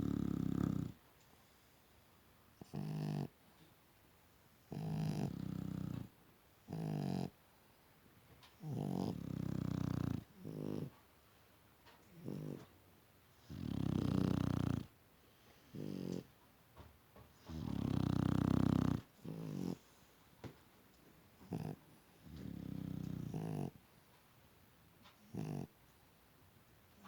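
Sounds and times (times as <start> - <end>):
dogs snoring: 0.0 - 1.0, 2.6 - 3.4, 4.6 - 7.4, 8.6 - 11.0, 12.1 - 12.7, 13.4 - 15.0, 15.7 - 16.3, 17.4 - 20.0, 21.4 - 23.8, 25.1 - 25.8.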